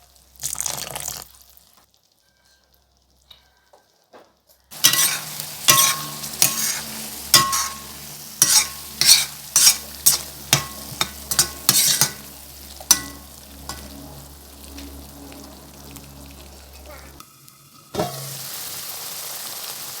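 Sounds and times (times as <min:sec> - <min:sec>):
curry sizzling in a pan: 0:00.0 - 0:20.0
spoon scraping a pan: 0:04.7 - 0:14.2, 0:18.0 - 0:18.5.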